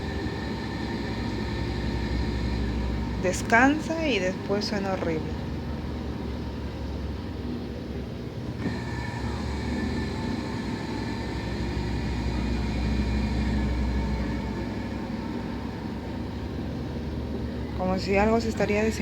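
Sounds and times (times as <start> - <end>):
washing machine humming: 0.0 - 19.0
washing machine whine and hiss: 0.0 - 19.0.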